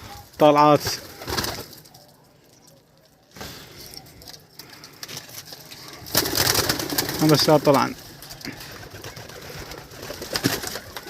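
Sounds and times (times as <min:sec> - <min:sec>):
pigeon wings fluttering: 0:00.8 - 0:01.9, 0:05.7 - 0:11.0.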